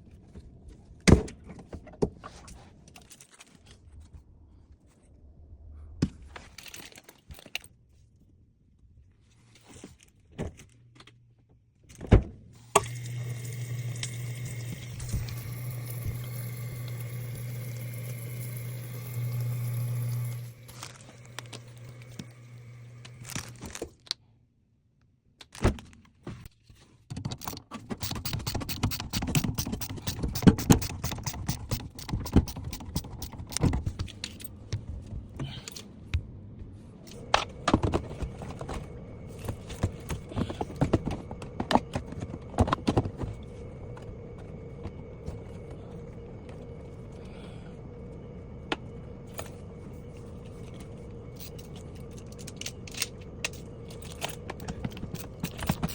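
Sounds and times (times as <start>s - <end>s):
faint steady hum: 12.6s - 23.8s, 28.2s - 55.9s
metal tools clinking: 51.4s - 55.9s.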